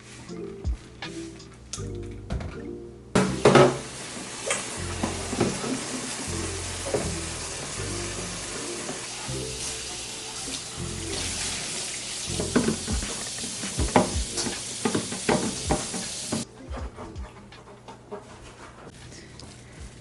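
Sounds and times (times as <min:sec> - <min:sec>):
background music with bass: 0:00.0 - 0:03.9, 0:04.8 - 0:05.7, 0:06.3 - 0:10.0, 0:10.8 - 0:11.6, 0:12.3 - 0:14.7, 0:15.4 - 0:20.0
parts clattering in a sink: 0:03.2 - 0:03.9, 0:04.5 - 0:06.2, 0:12.3 - 0:16.4
water running into a sink: 0:03.2 - 0:16.4.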